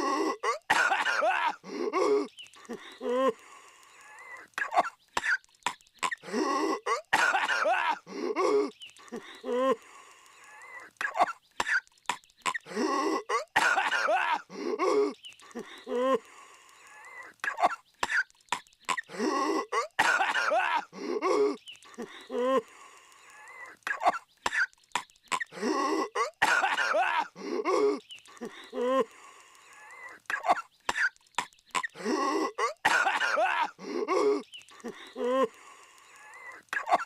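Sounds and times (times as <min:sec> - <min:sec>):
cartoon character coughing: 0:00.0 - 0:02.3, 0:04.6 - 0:05.4, 0:06.8 - 0:08.7, 0:11.0 - 0:11.8, 0:13.2 - 0:15.2, 0:17.5 - 0:18.2, 0:18.9 - 0:21.6, 0:25.3 - 0:28.0, 0:30.3 - 0:31.1, 0:31.8 - 0:34.4, 0:36.8 - 0:37.0
croaky strained gasps: 0:00.0 - 0:37.0.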